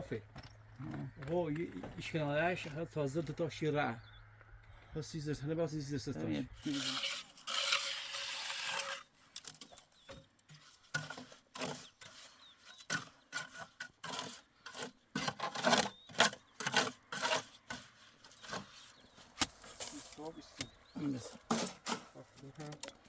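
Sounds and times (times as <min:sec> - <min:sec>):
scraping on rough surface: 0:06.2 - 0:23.0.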